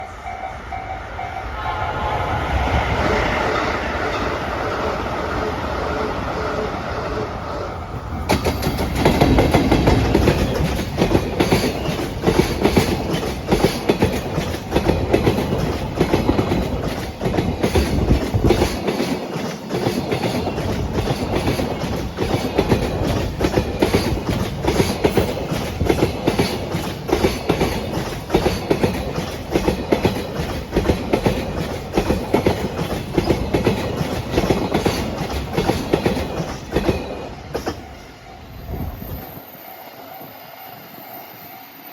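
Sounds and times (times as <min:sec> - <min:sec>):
train wheels clacking over rail joints: 0:08.2 - 0:38.1.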